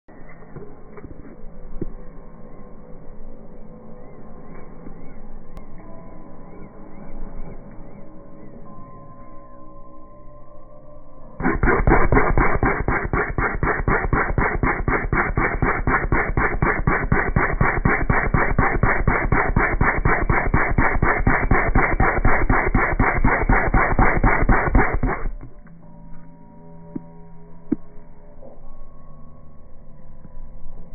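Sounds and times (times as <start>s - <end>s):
slowed-down fart pops: 11.4s - 25.5s.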